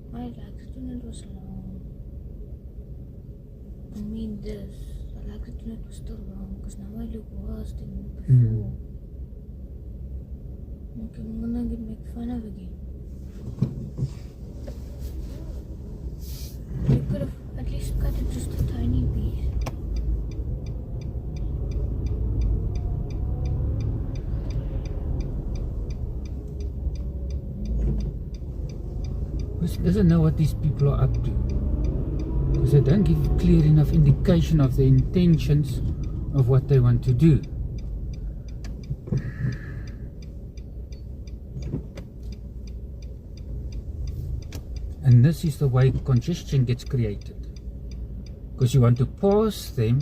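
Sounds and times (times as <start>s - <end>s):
car engine and road rumble: 0.0s - 50.0s
indicator flasher ticking: 17.2s - 50.0s.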